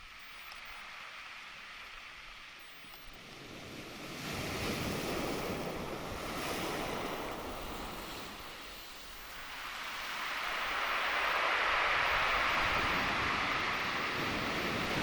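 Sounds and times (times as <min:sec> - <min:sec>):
wave breaking on shore: 0:09.6 - 0:15.0.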